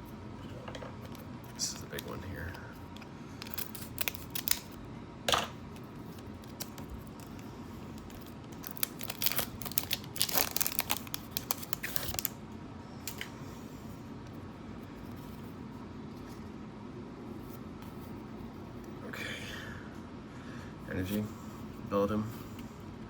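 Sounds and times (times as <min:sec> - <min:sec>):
foil wrapper crinkling and tearing: 0:03.4 - 0:04.8, 0:06.2 - 0:07.4, 0:08.0 - 0:12.4.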